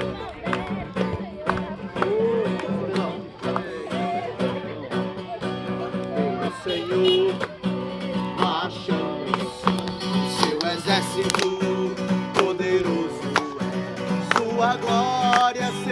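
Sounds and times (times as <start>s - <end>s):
acoustic guitar strumming chords: 0.0s - 15.9s.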